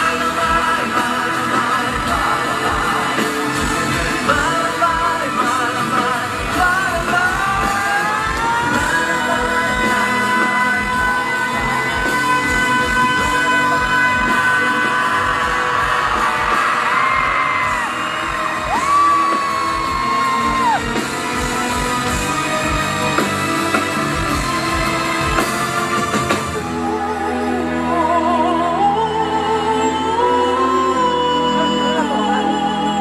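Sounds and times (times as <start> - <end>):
steady drum beat: 0.0 - 26.8
pop-rock band music: 0.0 - 33.0.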